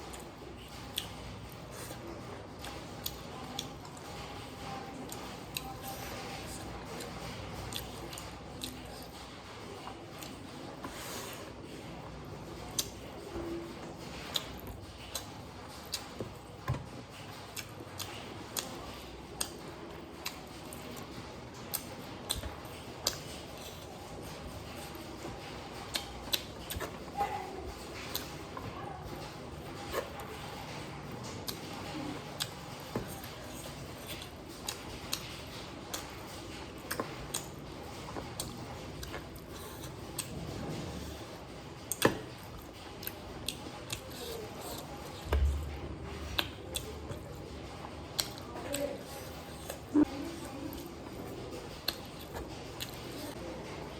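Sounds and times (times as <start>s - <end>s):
chewing mouth clicks and smacks: 13.8s - 53.4s.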